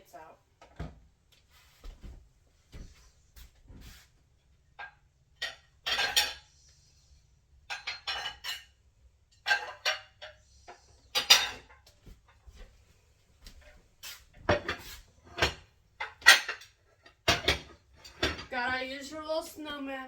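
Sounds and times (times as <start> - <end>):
plates clattering and clinking: 4.8 - 6.5, 7.7 - 8.8, 9.4 - 11.9, 14.4 - 18.5.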